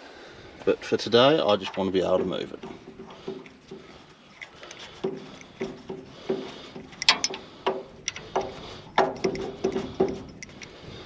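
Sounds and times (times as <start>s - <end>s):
knocking on metal: 1.7s - 3.9s.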